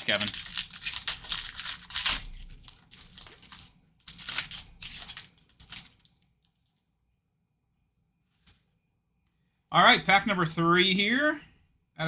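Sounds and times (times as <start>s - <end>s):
plastic wrapper crinkling and tearing: 0.0s - 7.2s.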